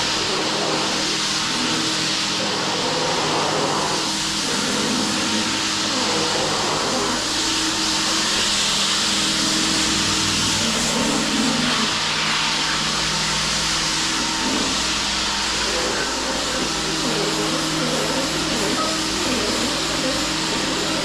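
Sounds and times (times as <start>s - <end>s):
electric motor running: 0.0s - 21.0s.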